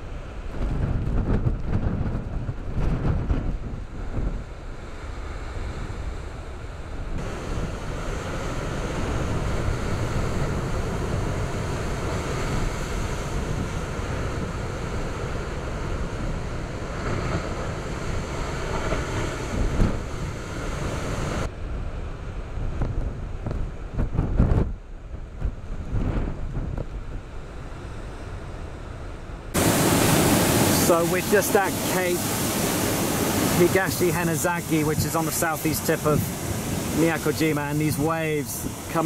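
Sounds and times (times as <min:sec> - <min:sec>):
surf crashing on rocks: 0:00.0 - 0:21.5, 0:29.5 - 0:39.0
wind buffeting microphone: 0:00.0 - 0:39.0.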